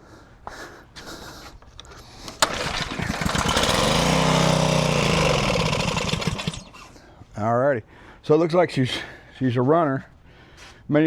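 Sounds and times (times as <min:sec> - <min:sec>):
small engine starting and running: 0:02.2 - 0:07.0.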